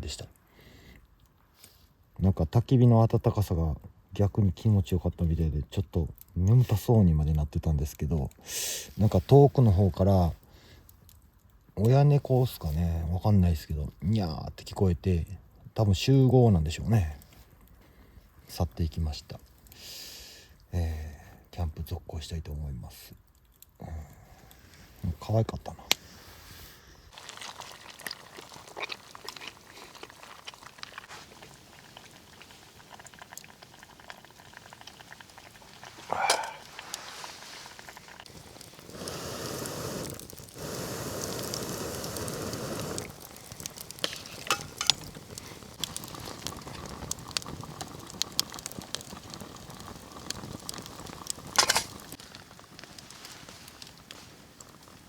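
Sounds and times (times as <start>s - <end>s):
campfire crackling and popping: 5.0s - 13.2s, 13.9s - 21.6s, 22.9s - 26.5s, 27.1s - 55.0s
steady hissing: 25.9s - 55.0s.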